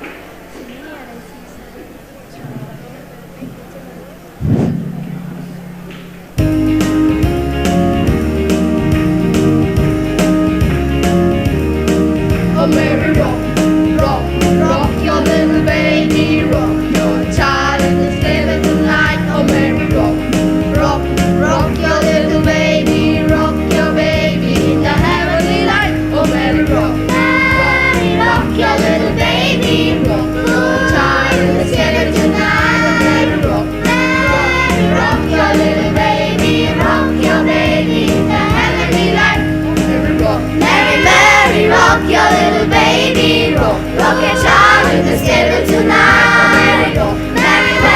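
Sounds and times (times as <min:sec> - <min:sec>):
instrumental accompaniment with beat: 0:04.4 - 0:47.9
children's choir singing: 0:12.5 - 0:47.9.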